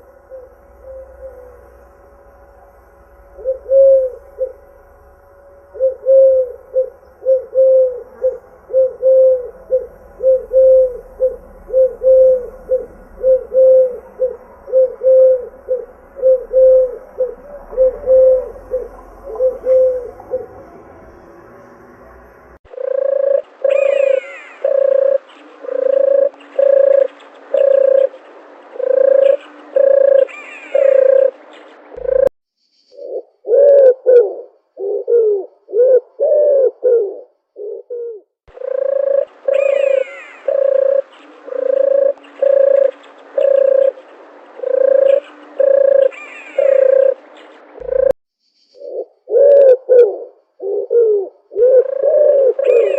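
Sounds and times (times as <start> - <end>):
dove cooing: 0.0 - 1.7, 3.4 - 4.7, 5.7 - 20.7, 22.7 - 32.3, 33.0 - 48.2, 48.8 - 52.9
higher sliding notes: 0.0 - 22.6.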